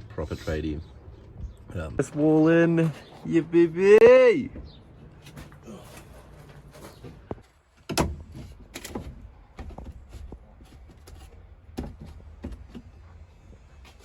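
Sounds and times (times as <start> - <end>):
irregular knocks and thuds: 6.9 - 13.0.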